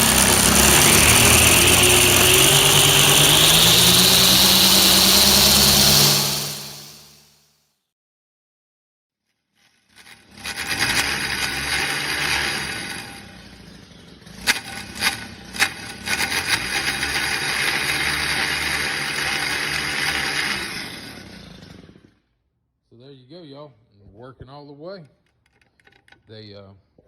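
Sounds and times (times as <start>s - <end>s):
string trimmer engine revving: 0.0s - 7.2s, 10.2s - 22.2s.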